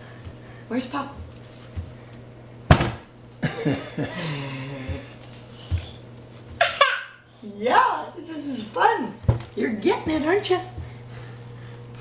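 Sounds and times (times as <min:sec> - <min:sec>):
knock on kitchen cabinet: 0:02.7 - 0:03.0.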